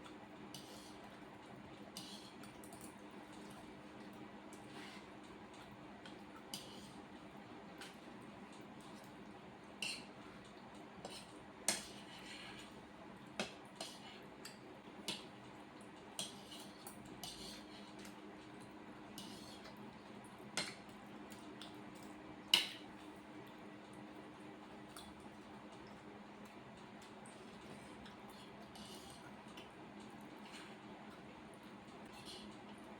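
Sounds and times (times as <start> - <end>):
cutlery clicking against plates: 13.4 - 15.3, 20.6 - 22.9.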